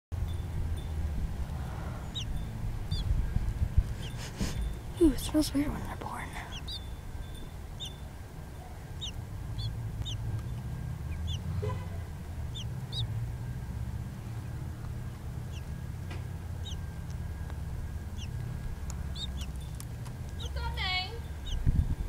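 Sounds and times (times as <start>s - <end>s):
baby birds peeping: 0.2s - 22.0s
steady low hum: 0.2s - 22.0s.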